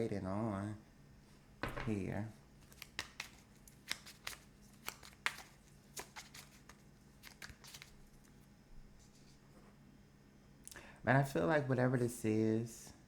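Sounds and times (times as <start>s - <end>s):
cards clicking and snapping: 2.6s - 7.9s.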